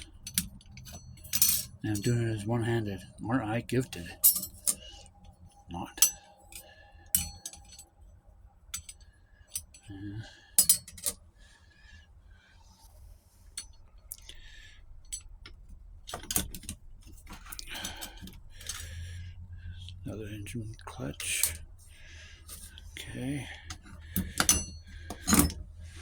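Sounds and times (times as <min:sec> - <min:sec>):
metal parts clinking: 0:00.0 - 0:02.4, 0:03.9 - 0:05.0, 0:06.0 - 0:07.9, 0:08.7 - 0:11.2, 0:15.0 - 0:19.0, 0:21.1 - 0:21.8, 0:22.4 - 0:22.8, 0:23.6 - 0:26.0.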